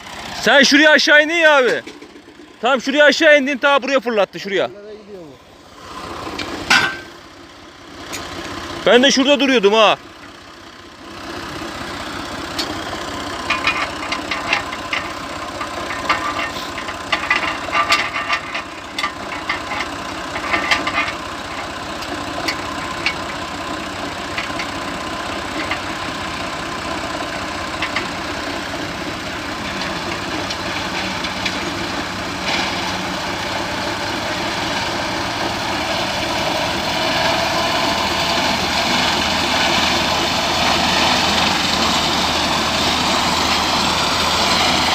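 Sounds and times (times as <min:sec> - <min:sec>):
mowing machine engine running: 0:00.0 - 0:44.9
sharp clicks and rattles: 0:00.4 - 0:04.7, 0:12.5 - 0:32.7.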